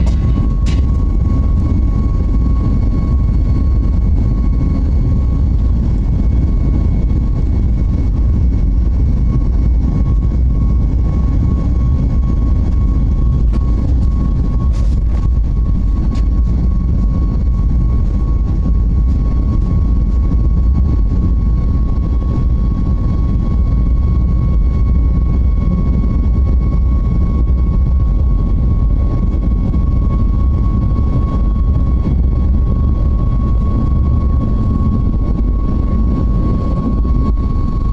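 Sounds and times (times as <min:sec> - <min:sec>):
jet engine rumble in cabin: 0:00.0 - 0:37.9
thin steady whine: 0:00.0 - 0:37.9.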